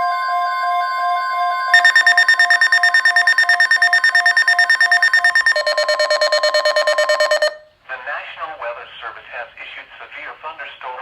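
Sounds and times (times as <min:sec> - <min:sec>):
beeping alarms: 0:01.8 - 0:07.6
steady long alert tone: 0:01.8 - 0:07.6.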